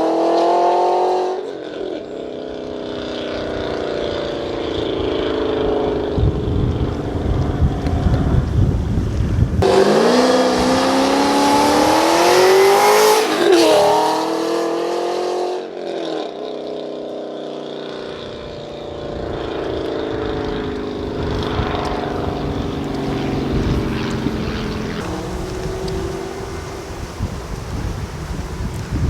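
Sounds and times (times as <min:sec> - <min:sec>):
car engine steady note: 0:02.6 - 0:13.2, 0:18.0 - 0:29.0
car engine revving on launch: 0:09.4 - 0:15.8, 0:19.2 - 0:28.2.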